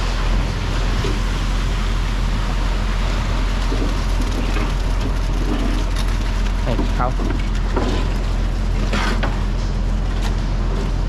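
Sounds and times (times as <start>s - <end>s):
even rushing noise: 0.0s - 6.7s
truck engine hum: 0.0s - 11.0s.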